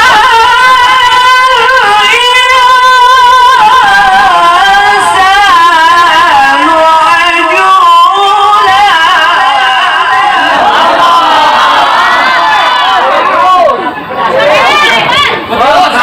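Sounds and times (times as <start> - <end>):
man reciting in melodic chant: 2.0 - 10.6.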